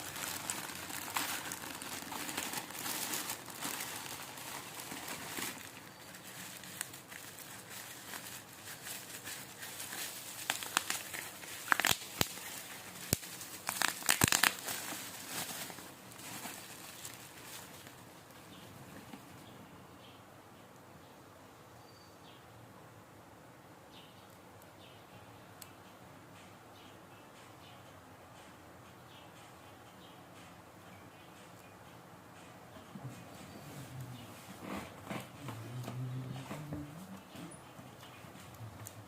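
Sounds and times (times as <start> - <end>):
packaging crinkling and rustling: 0.0 - 18.1.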